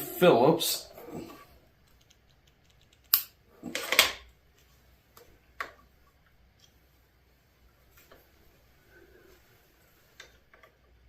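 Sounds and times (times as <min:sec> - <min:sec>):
sharp clicks: 0:01.9 - 0:03.4.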